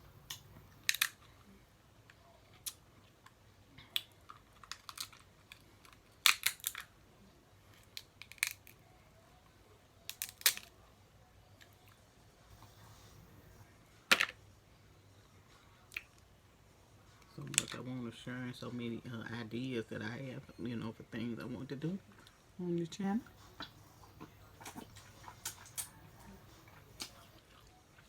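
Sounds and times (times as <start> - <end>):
crab shells cracking by hand: 0.3 - 1.2, 4.0 - 6.9, 7.9 - 8.8, 10.1 - 10.7.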